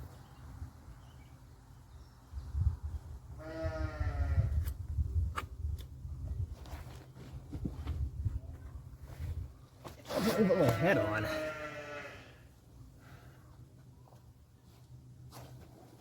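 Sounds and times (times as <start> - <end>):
farm animal bleating: 3.4 - 4.5, 10.2 - 12.5.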